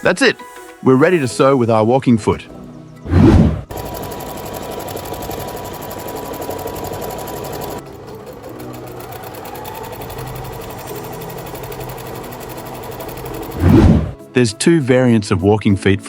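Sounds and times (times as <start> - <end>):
sewing machine stitching: 3.2 - 14.2.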